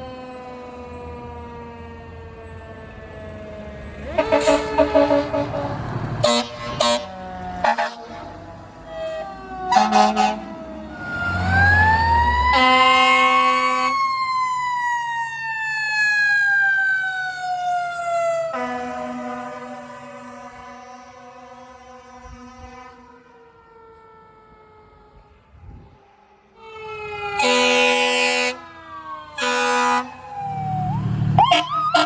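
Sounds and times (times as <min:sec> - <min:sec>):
rising and falling siren: 0:00.0 - 0:32.0
fire truck air horn blasts: 0:04.0 - 0:10.7, 0:12.5 - 0:14.0, 0:18.5 - 0:23.4, 0:27.3 - 0:30.3, 0:31.4 - 0:32.0.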